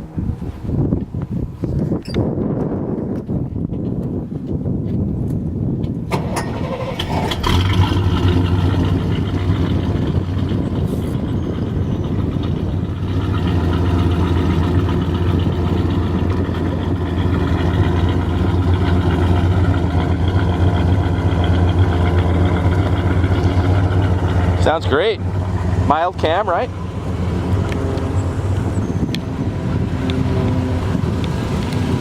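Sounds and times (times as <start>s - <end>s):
car engine idling: 7.0s - 32.0s.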